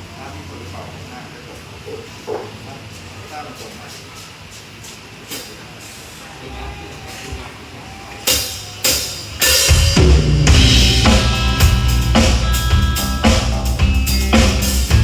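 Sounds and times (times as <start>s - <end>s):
held pitched instrument notes: 8.2s - 15.0s
drum kit: 8.3s - 15.0s
bass line: 9.7s - 15.0s.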